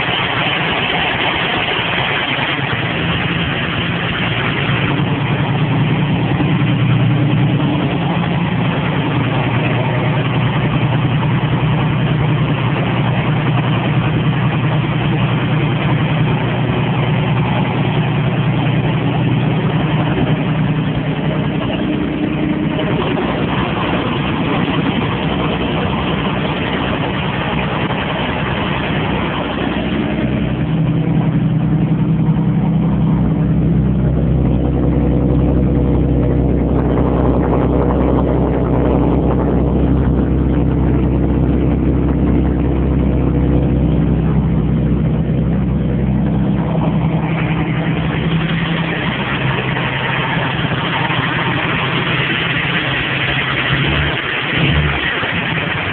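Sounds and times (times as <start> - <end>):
engine idling: 0.0 - 55.9.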